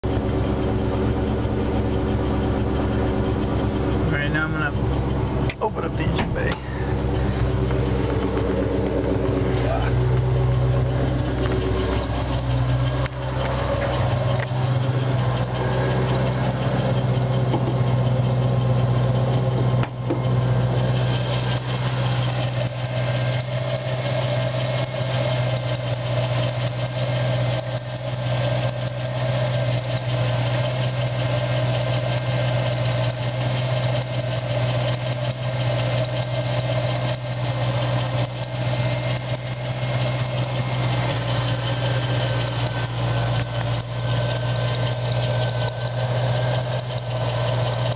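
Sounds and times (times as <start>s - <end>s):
high steady whine: 0.0s - 33.2s
car engine idling: 0.0s - 47.9s.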